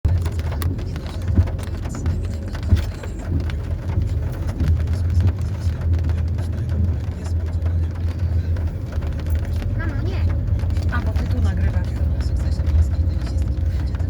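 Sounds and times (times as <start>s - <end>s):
car driving rumble: 0.0s - 14.0s.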